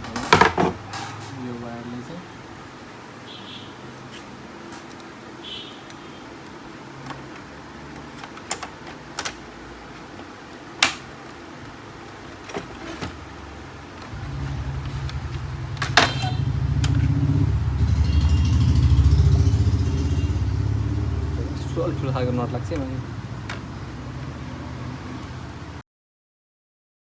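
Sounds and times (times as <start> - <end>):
small parts clicking: 5.8 - 12.7
motor vehicle passing: 12.9 - 25.8.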